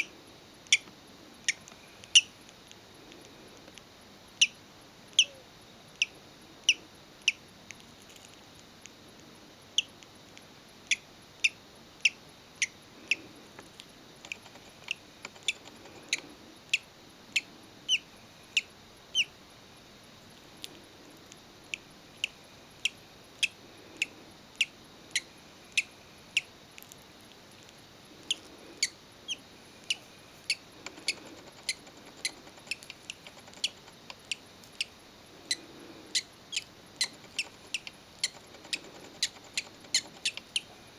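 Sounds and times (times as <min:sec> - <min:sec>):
chick peeping: 0:14.2 - 0:16.8, 0:28.2 - 0:40.7.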